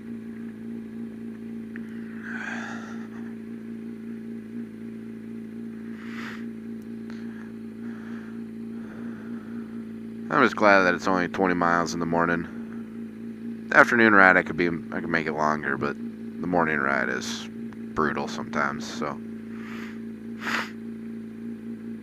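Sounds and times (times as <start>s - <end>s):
motorcycle engine running: 0.0s - 22.0s.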